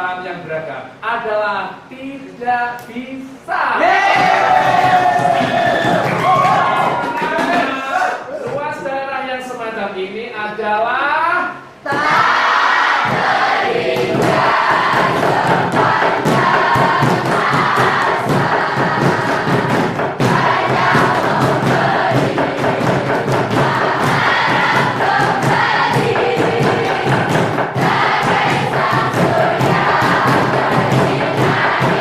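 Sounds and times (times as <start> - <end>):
group singing over music: 12.0 - 32.0
thumps and knocks: 13.0 - 32.0.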